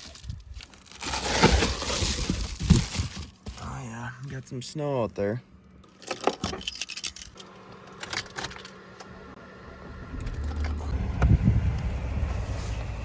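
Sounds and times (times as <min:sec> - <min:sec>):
low steady rumble: 0:06.6 - 0:13.0.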